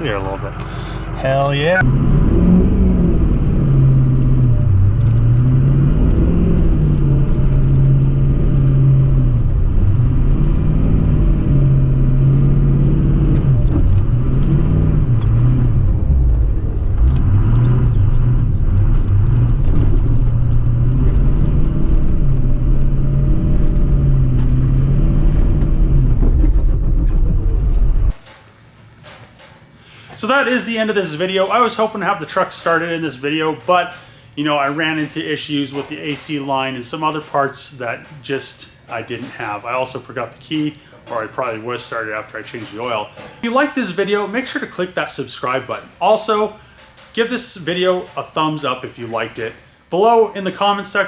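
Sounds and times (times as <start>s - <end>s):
truck engine revving: 0.0s - 28.2s.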